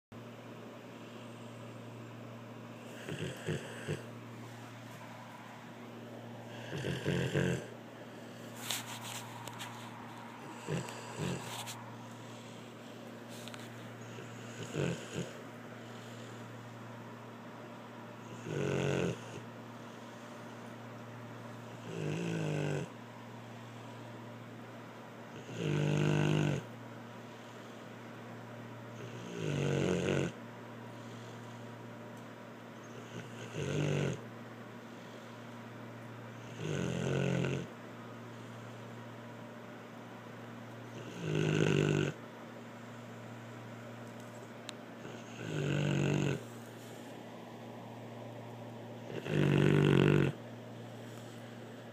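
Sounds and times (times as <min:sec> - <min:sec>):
steady low hum: 0:00.1 - 0:51.9
person snoring: 0:02.8 - 0:04.1, 0:06.4 - 0:12.8, 0:13.4 - 0:16.5, 0:18.2 - 0:19.4, 0:21.7 - 0:23.0, 0:25.3 - 0:26.7, 0:29.0 - 0:30.4, 0:33.0 - 0:34.2, 0:36.4 - 0:37.7, 0:40.9 - 0:42.2, 0:45.0 - 0:46.6, 0:49.0 - 0:50.4.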